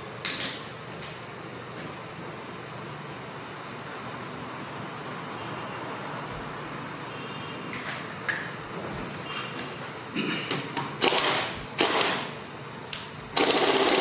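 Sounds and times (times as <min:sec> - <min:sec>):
harsh noise bursts: 0:13.4 - 0:14.0.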